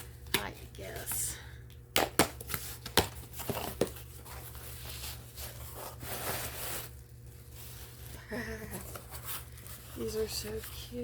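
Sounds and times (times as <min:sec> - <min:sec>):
packaging rustling and scraping: 0:02.4 - 0:11.0.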